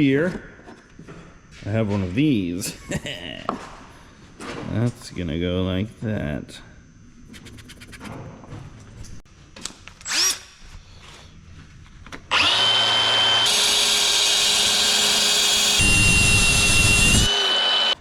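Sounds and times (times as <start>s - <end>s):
power tool whining: 12.3s - 18.0s.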